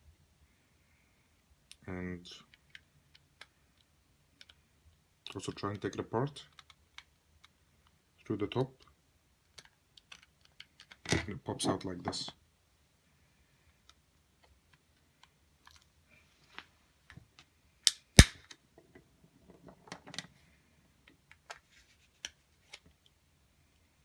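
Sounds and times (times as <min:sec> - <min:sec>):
plastic clips snapping: 0:17.9 - 0:18.4.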